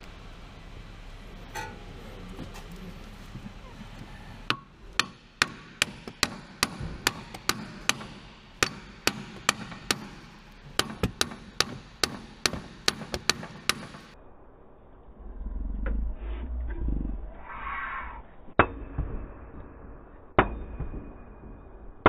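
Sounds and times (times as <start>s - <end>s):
hammer blows on metal joint: 1.5s - 2.6s, 4.4s - 14.1s.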